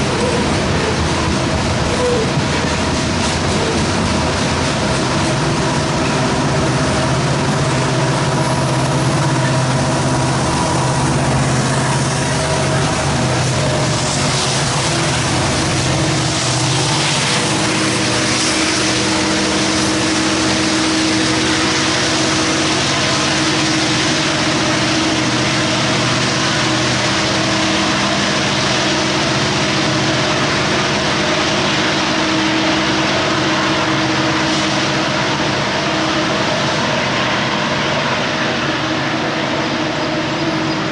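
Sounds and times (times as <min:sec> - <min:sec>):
diesel locomotives running under load: 0:00.0 - 0:40.9.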